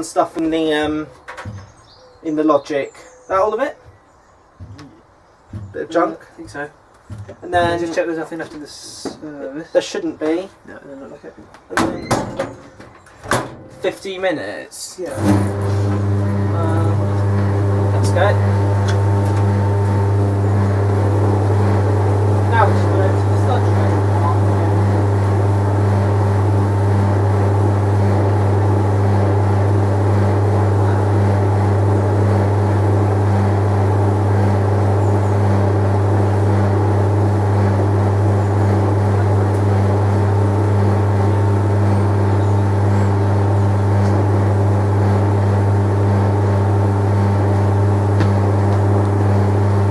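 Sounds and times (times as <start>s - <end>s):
clothes dryer motor hum: 15.1s - 49.9s.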